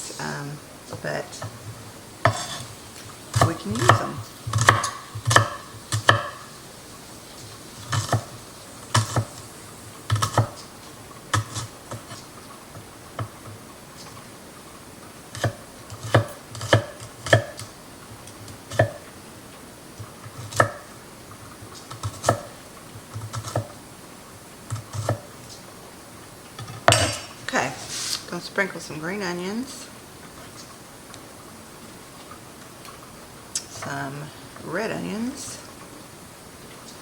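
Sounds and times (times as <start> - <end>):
knife chopping on cutting board: 2.2 - 2.7, 3.4 - 6.5, 7.9 - 8.4, 9.0 - 9.4, 10.1 - 10.7, 15.4 - 17.7, 18.7 - 19.0, 20.2 - 20.9, 21.9 - 22.6, 23.2 - 23.7, 24.7 - 25.3, 26.8 - 27.3.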